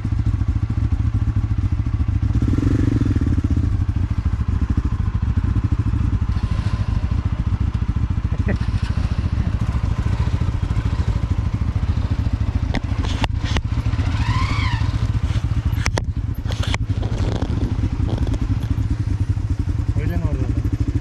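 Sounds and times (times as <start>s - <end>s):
knocks and rattles from motorcycle: 0.0s - 21.0s
motorcycle engine running: 0.0s - 21.0s
rising and falling tonal call: 13.6s - 15.7s.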